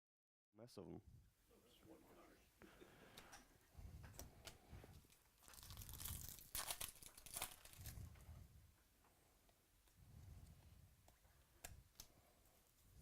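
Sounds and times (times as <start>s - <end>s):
foil wrappers tearing and crinkling: 5.4s - 8.1s.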